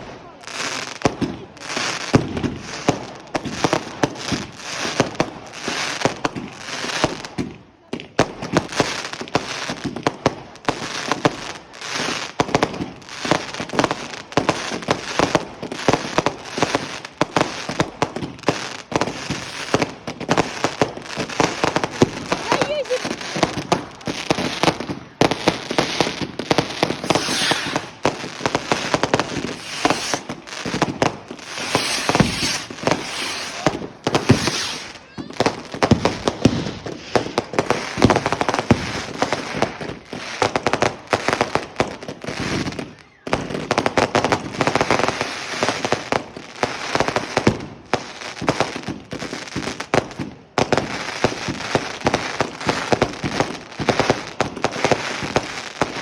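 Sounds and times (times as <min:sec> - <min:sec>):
fireworks and firecrackers bangs: 0:00.0 - 0:56.0.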